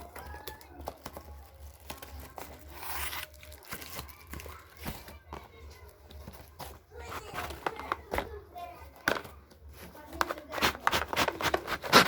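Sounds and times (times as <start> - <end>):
packaging crinkling: 0.0 - 8.1
packaging tearing rip: 10.6 - 12.0.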